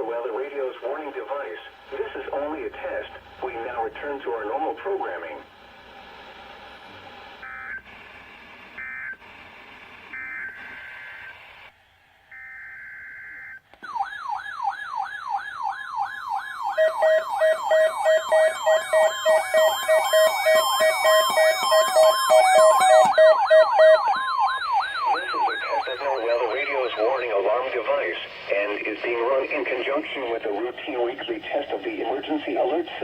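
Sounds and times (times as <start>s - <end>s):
electronic siren alert tone: 12.3s - 27.6s
rapid steady beeping: 16.3s - 32.8s
screechy digital tone bursts: 16.8s - 24.1s.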